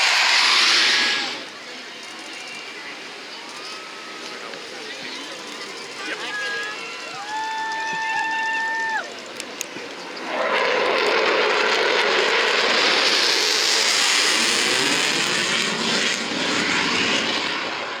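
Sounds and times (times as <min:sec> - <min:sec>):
fighter jet roar: 0:00.0 - 0:01.6, 0:10.0 - 0:18.0.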